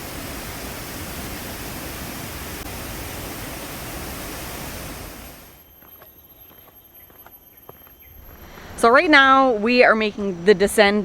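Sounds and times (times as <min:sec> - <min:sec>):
steady rushing noise: 0:00.0 - 0:05.6.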